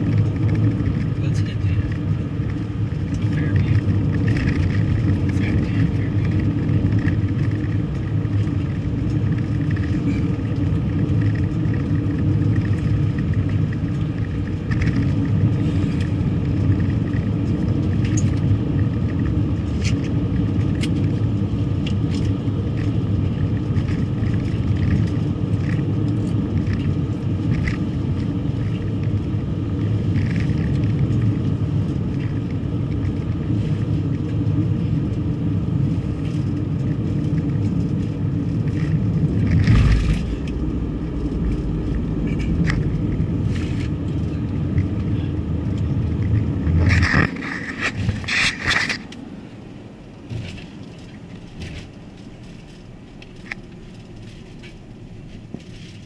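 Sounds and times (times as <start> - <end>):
car engine and road noise: 0.0 - 56.0.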